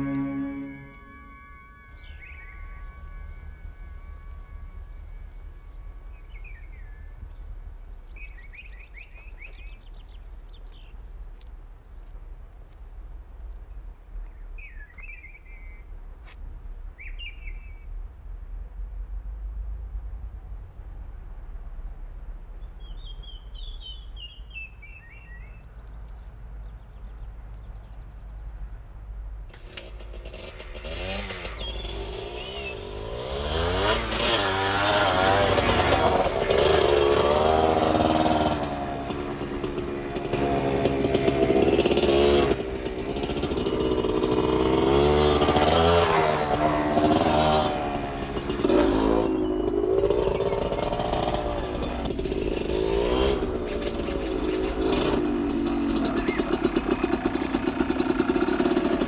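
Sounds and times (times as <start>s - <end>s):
motorcycle engine revving: 0.0s - 8.8s, 29.5s - 59.0s
bird trilling: 0.0s - 9.0s, 48.4s - 58.6s
low hum: 0.0s - 11.9s.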